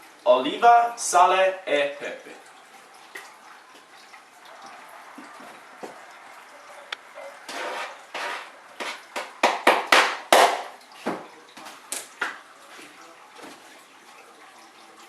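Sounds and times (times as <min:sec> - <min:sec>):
utensil scraping and knocking onions: 0:07.4 - 0:11.2.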